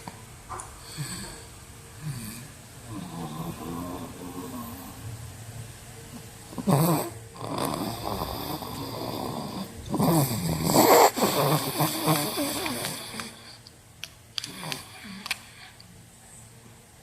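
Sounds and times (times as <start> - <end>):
toddler snoring: 0.8 - 5.0, 6.5 - 13.6, 14.5 - 15.8.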